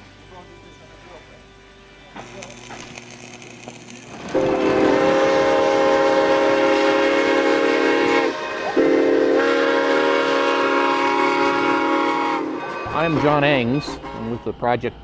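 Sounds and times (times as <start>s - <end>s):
steam locomotive whistle: 4.2s - 14.9s.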